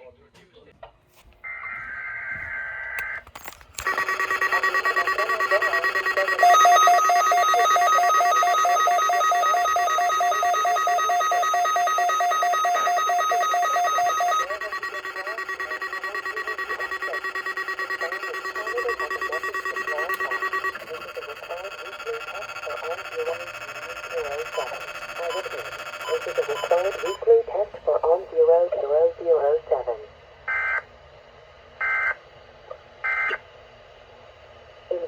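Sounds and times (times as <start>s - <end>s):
rapid beeping: 3.8s - 27.2s
steady alarm tones: 3.8s - 27.2s
digital data buzz: 3.9s - 27.2s.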